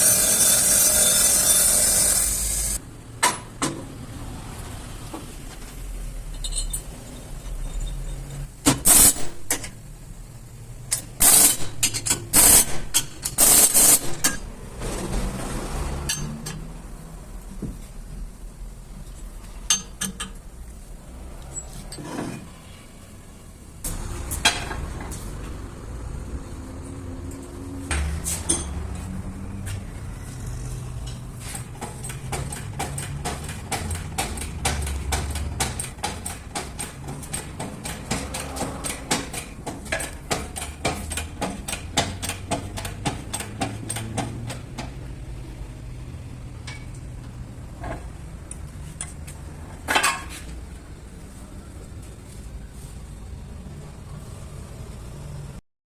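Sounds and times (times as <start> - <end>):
metal clinking and tapping: 46.6 - 47.1.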